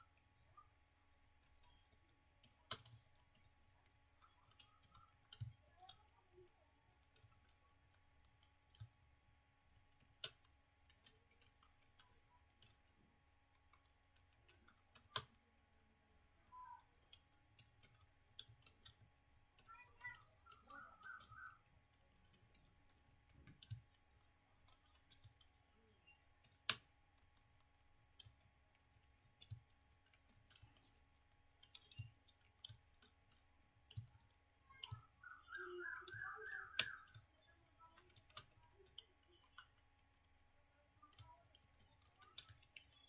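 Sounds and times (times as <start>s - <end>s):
keyboard keys clicking: 16.6s - 43.0s.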